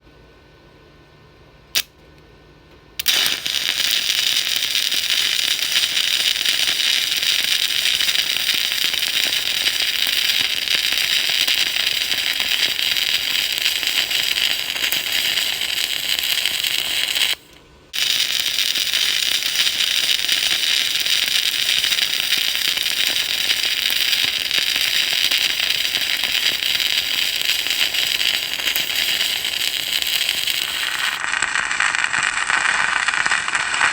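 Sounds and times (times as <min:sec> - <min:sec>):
sharp click: 0:01.8 - 0:02.0
welding arc crackling: 0:03.0 - 0:33.9.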